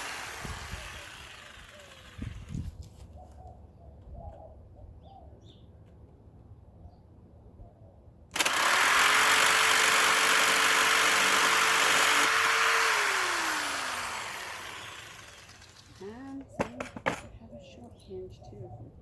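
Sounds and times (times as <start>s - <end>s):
power cutting tool cutting metal: 0.0s - 2.3s, 8.4s - 16.0s.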